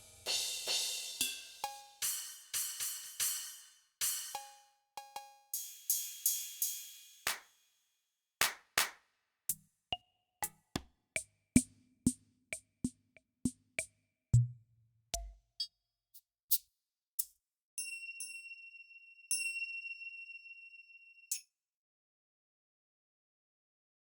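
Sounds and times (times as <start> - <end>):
drum hits: 0.0 - 4.4.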